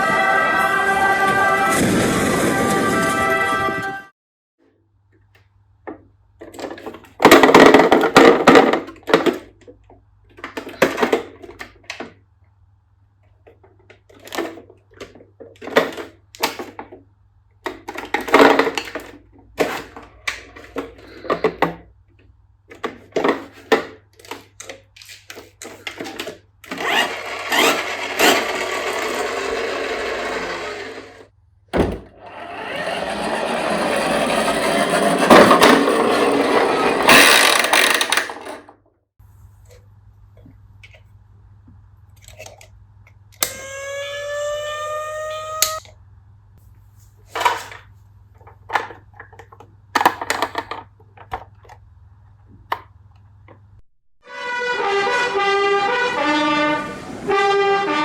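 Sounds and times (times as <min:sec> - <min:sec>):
toy trucks clattering and whirring: 0:05.9 - 0:12.2, 0:13.3 - 0:31.3, 0:32.1 - 0:38.9, 0:47.3 - 0:51.8.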